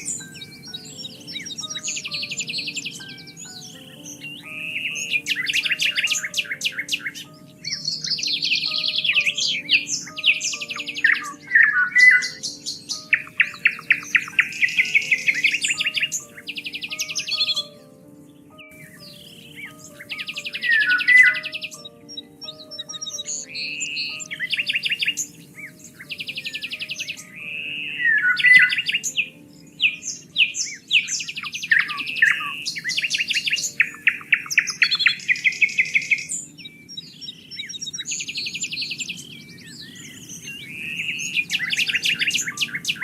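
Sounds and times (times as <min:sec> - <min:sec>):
soft background music: 0:00.0 - 0:43.0
songbirds trilling and chirping: 0:00.0 - 0:43.0.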